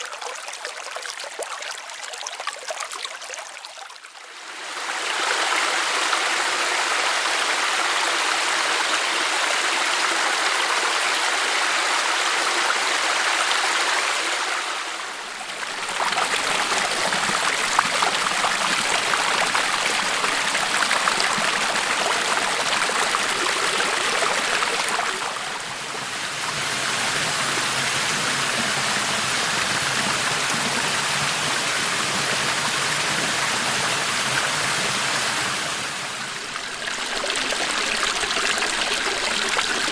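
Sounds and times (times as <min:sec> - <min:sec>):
creek water flowing: 0:00.0 - 0:39.9.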